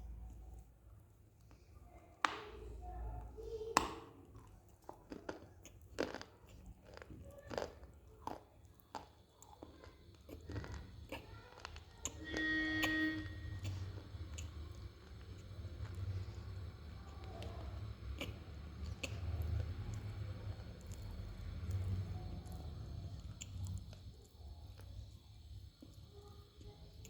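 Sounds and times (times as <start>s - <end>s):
crunching and chewing clay: 3.8s - 27.0s
brief pitched tone: 12.2s - 13.7s.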